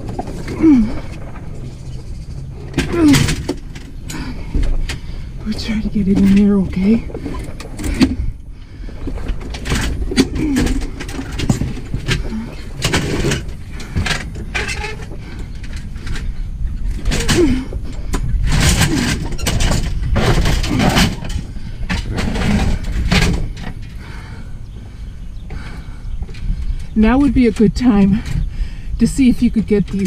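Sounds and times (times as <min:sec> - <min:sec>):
steady low rumble: 0:00.0 - 0:30.0
scrap items knocking and scraping: 0:18.1 - 0:23.8.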